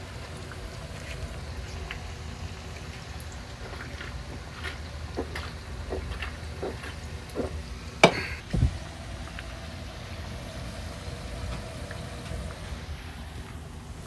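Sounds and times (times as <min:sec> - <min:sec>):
dull thump: 0:08.0 - 0:08.8.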